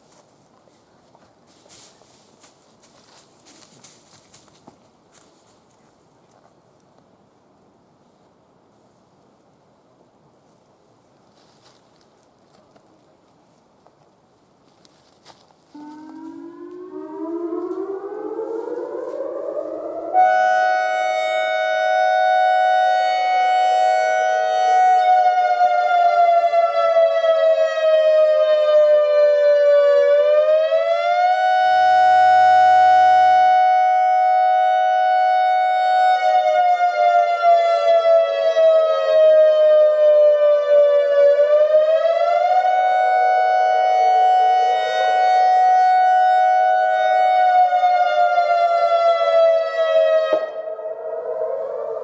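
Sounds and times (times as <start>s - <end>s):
electronic warning siren: 15.7s - 52.0s.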